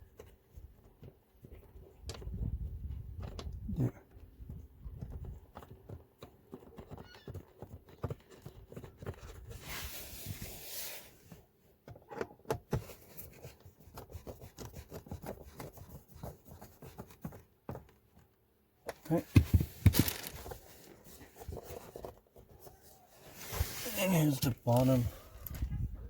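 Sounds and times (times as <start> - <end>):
short rustling scrape: 9.4 - 11.4, 19.2 - 25.7.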